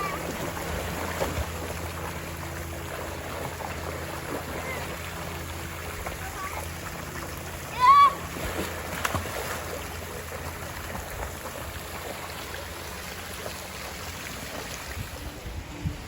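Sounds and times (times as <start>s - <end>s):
sea water washing on a beach: 0.0s - 16.0s.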